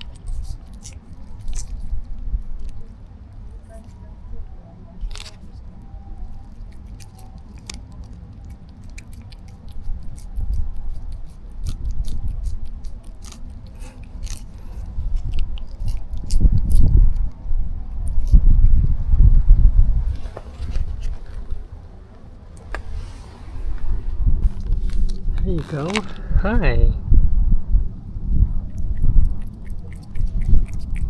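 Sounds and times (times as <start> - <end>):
small clicks and crunches: 0.0 - 4.1, 5.0 - 18.5, 28.6 - 31.0
wind rumble on microphone: 0.0 - 7.1, 9.1 - 31.0.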